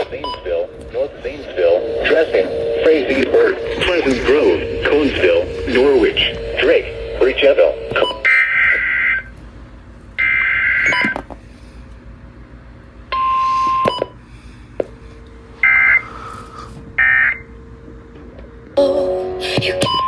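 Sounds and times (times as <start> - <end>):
shrill buzzing data tones: 0.0 - 9.4
steady pure tone: 0.0 - 10.8.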